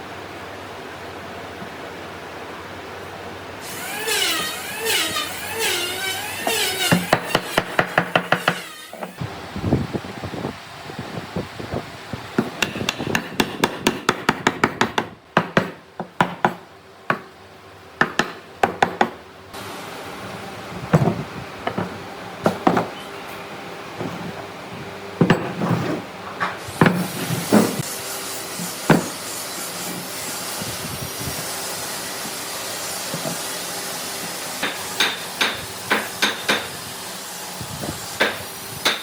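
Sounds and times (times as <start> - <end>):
hammer strikes: 18.0 - 19.2, 28.8 - 29.2, 34.6 - 36.7, 38.2 - 39.0.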